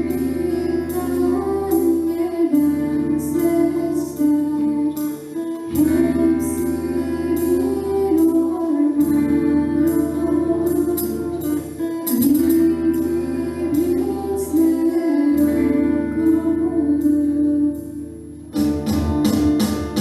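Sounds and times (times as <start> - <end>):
percussion strikes: 17.8 - 20.0.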